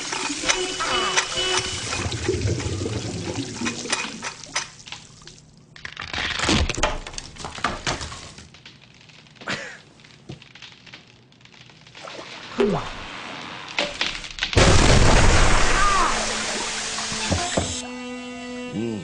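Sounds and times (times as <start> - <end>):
water splashing and pouring: 0.0 - 5.7, 10.8 - 17.8
sharp knocks and clatter: 6.8 - 9.2.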